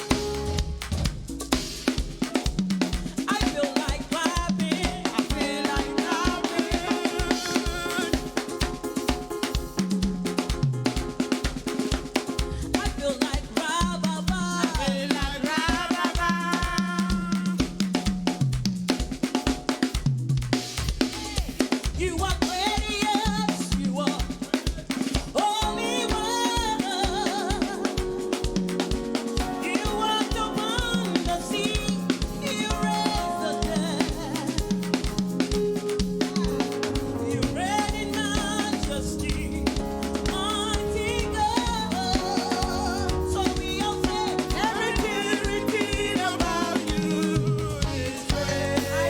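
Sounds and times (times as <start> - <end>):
worship band music: 0.0 - 17.0, 21.6 - 49.0
drum kit beat: 0.0 - 49.0
person singing with vibrato: 3.3 - 8.9, 12.7 - 17.6, 25.3 - 49.0.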